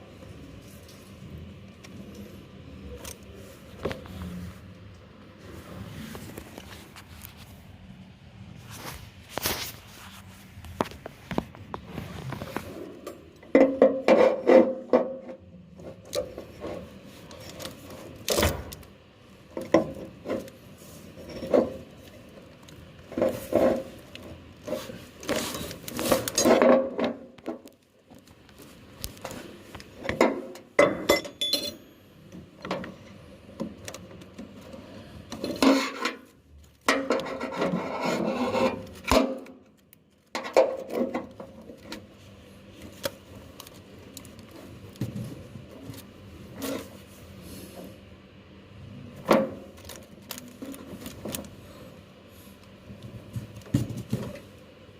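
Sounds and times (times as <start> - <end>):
wire scraping and rubbing: 20.1 - 26.9, 34.6 - 39.2.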